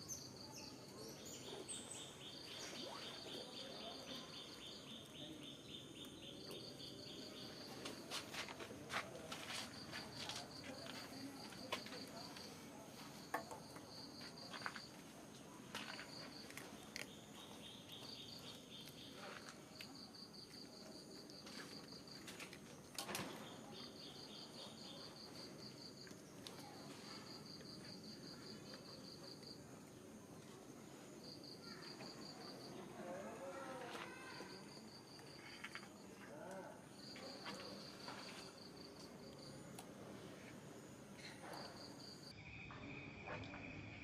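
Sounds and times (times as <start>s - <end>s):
insect chirping trills: 0.0s - 8.0s, 30.8s - 44.0s.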